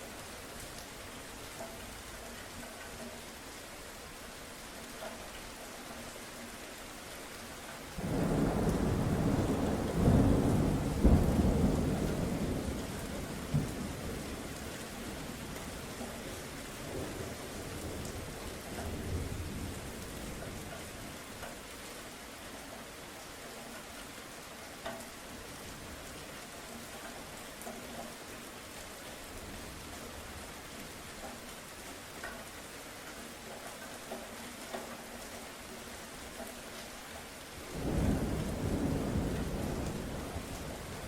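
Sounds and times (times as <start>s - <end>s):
steady rain: 0.0s - 41.0s
low thunder rumble: 8.0s - 14.4s, 37.7s - 41.0s.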